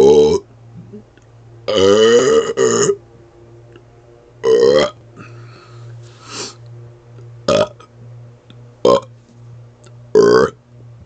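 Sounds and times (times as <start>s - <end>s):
man burping: 1.7s - 3.0s, 4.4s - 5.4s, 7.5s - 7.8s, 8.8s - 9.1s, 10.2s - 10.6s.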